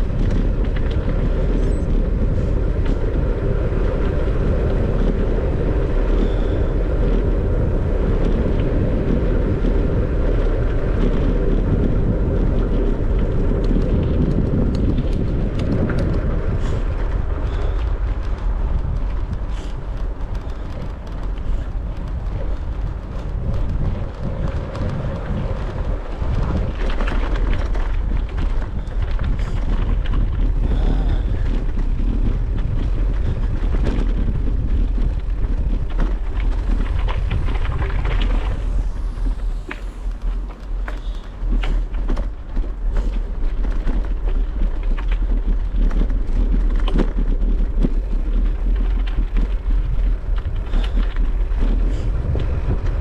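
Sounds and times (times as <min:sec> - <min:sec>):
road and tyre noise: 0:00.0 - 0:53.0
wind rumbling over microphone: 0:00.0 - 0:53.0.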